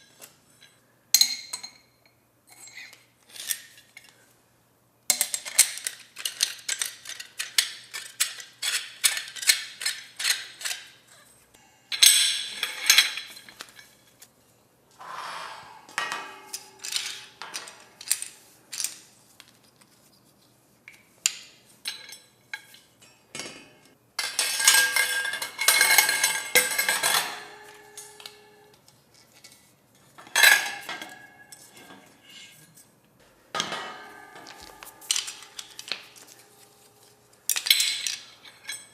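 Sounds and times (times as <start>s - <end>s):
metal shelf parts clinking: 15.6s - 19.0s, 33.6s - 36.6s, 37.4s - 38.9s.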